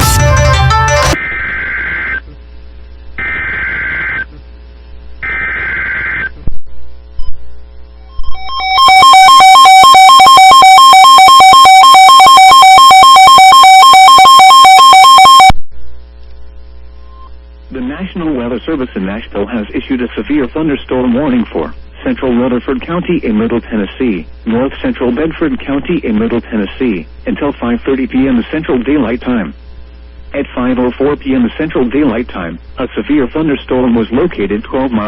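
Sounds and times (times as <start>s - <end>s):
two-tone attention signal: 8.2s - 15.5s
digital data header bursts: 8.3s - 15.5s.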